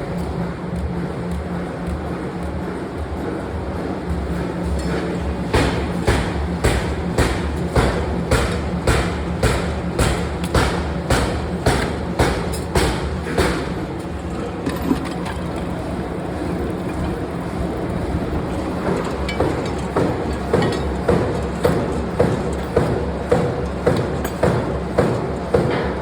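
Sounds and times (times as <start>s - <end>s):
machine hum: 0.0s - 24.0s
power press striking metal: 5.5s - 15.2s.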